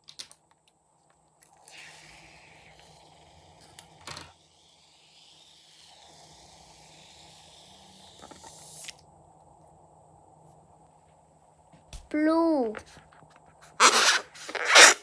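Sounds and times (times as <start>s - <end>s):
scraping rustle: 12.8s - 15.0s.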